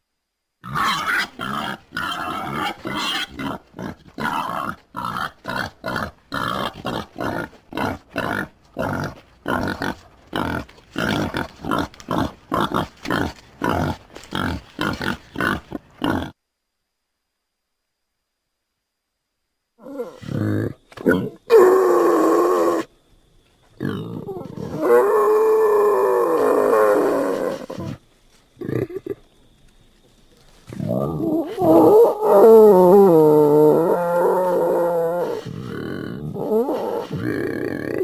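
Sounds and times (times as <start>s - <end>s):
wild boar grunting: 0.6s - 16.4s, 28.6s - 29.3s, 30.7s - 38.0s.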